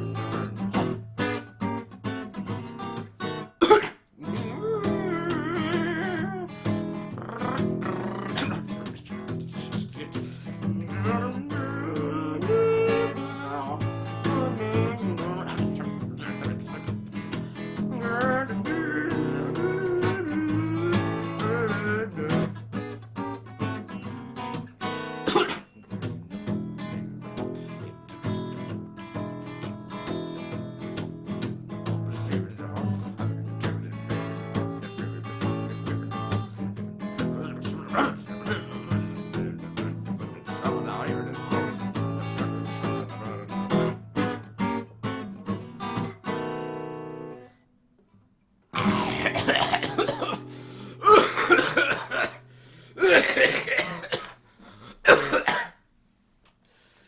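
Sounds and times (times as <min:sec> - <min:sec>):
strummed acoustic guitar: 0:00.0 - 0:55.7
person singing: 0:04.2 - 0:17.1, 0:17.7 - 0:22.6, 0:31.9 - 0:36.5, 0:37.2 - 0:44.0, 0:48.8 - 0:50.1.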